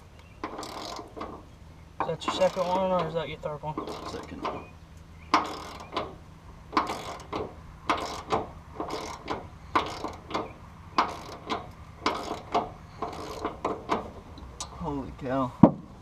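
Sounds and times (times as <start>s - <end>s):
hand ratchet cranking: 0.4s - 4.7s, 5.3s - 14.7s.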